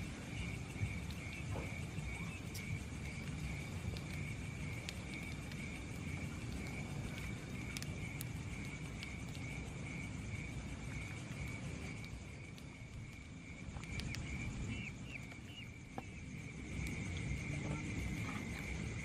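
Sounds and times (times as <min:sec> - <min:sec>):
crickets trilling: 0:00.0 - 0:19.0
short insect chirps: 0:00.0 - 0:19.0.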